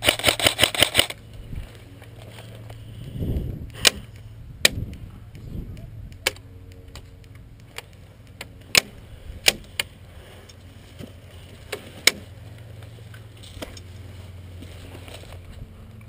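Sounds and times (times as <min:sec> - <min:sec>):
airsoft rifle shots: 0:00.0 - 0:01.2, 0:03.8 - 0:04.9, 0:08.6 - 0:09.7.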